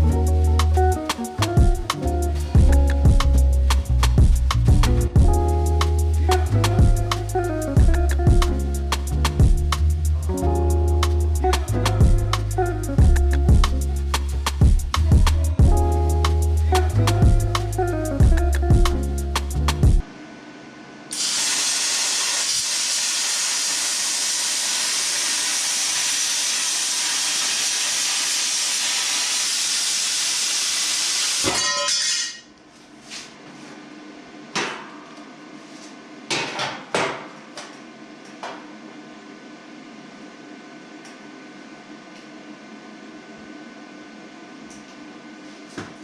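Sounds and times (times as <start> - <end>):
plasma cutter hissing: 21.1 - 31.5.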